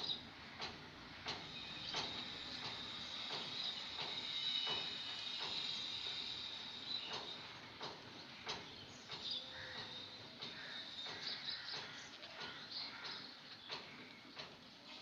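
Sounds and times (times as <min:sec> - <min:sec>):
steady high-pitched hiss: 0:00.0 - 0:08.7
faint regular ticking: 0:00.6 - 0:06.2, 0:06.8 - 0:14.8.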